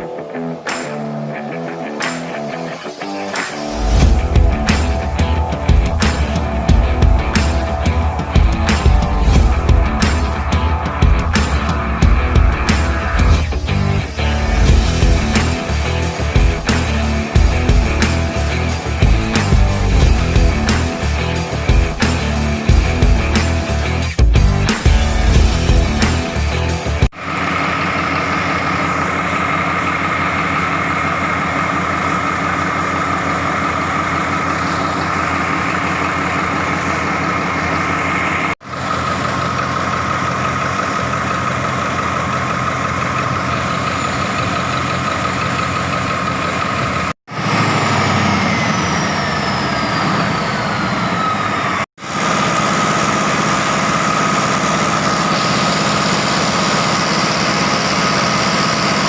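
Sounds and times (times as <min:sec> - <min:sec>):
high whine: 0:00.0 - 0:45.8, 0:47.3 - 0:59.0
diesel engine running: 0:00.0 - 0:59.0
faint falling whistle: 0:48.0 - 0:51.8.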